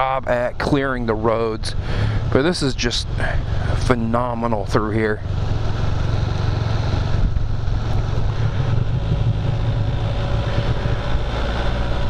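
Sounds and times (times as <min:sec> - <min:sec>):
wind and road noise: 0:00.0 - 0:12.0
motorbike engine running: 0:03.0 - 0:12.0.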